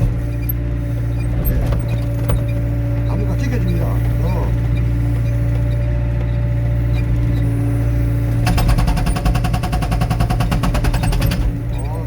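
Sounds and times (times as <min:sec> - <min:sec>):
diesel engine running: 0:00.0 - 0:12.0
hydraulic breaker hammering: 0:08.3 - 0:12.0.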